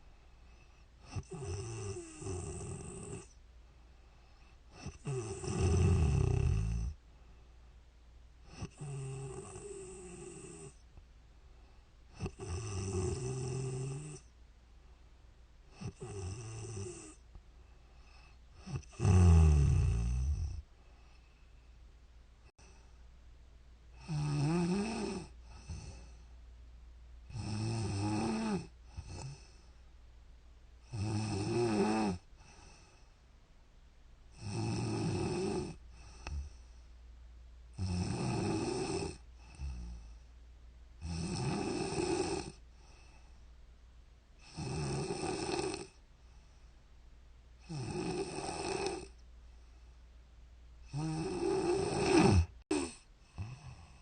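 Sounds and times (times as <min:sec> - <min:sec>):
woman snoring: 0:01.0 - 0:03.4, 0:04.7 - 0:07.0, 0:08.5 - 0:10.8, 0:12.2 - 0:14.3, 0:15.7 - 0:17.2, 0:18.6 - 0:20.6, 0:24.0 - 0:26.2, 0:27.3 - 0:29.6, 0:30.9 - 0:33.0, 0:34.4 - 0:36.6, 0:37.8 - 0:40.1, 0:41.0 - 0:42.6, 0:44.4 - 0:46.0, 0:47.6 - 0:49.2, 0:50.9 - 0:54.0.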